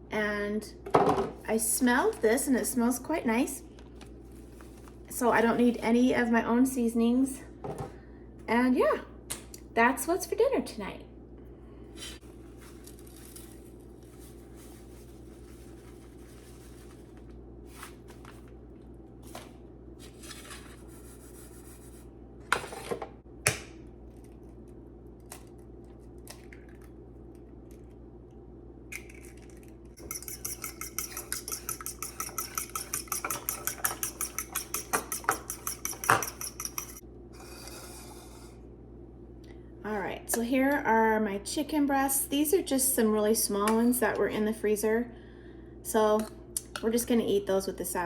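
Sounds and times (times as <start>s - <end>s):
fork beating egg in bowl: 30.0s - 37.0s
kitchenware clattering: 30.0s - 37.0s.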